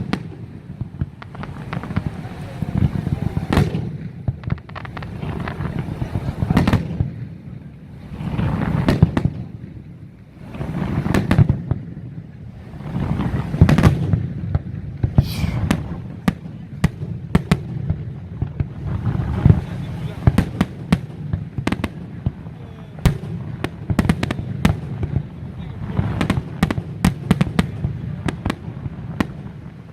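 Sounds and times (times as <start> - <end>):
firework whistle: 15.2 - 16.2.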